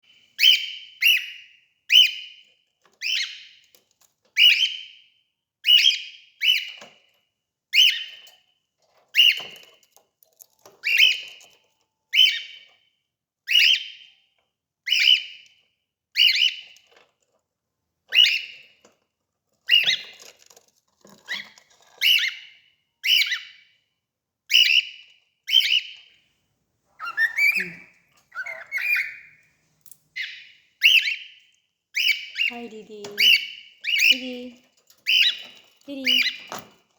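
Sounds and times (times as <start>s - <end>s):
cockatiel calling: 0.4s - 2.3s, 3.0s - 3.6s, 4.4s - 4.9s, 10.8s - 11.4s, 12.1s - 12.6s, 13.5s - 14.0s, 14.9s - 15.4s, 16.2s - 16.6s, 18.1s - 18.6s, 21.3s - 23.6s, 24.5s - 26.0s, 27.0s - 29.4s, 30.2s - 32.6s.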